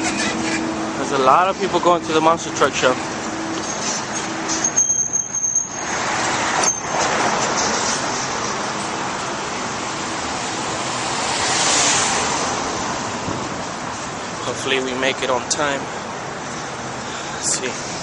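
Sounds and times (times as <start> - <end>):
passing road traffic rushing: 0.0 - 18.0
thin high squeal: 3.6 - 7.0
vehicle passing by: 5.8 - 14.6.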